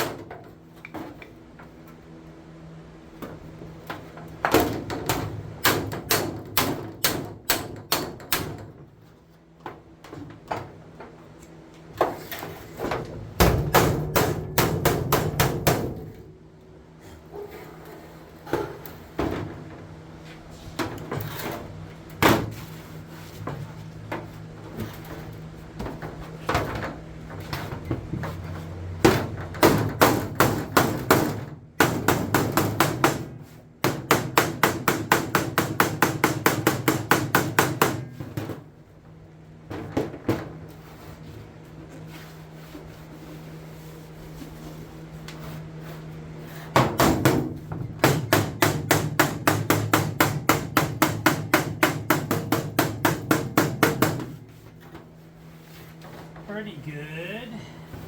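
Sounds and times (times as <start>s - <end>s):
steady low hum: 0.0s - 58.0s
hammer beating metal panel: 4.4s - 8.8s, 13.4s - 16.3s, 29.0s - 38.6s, 46.7s - 54.4s.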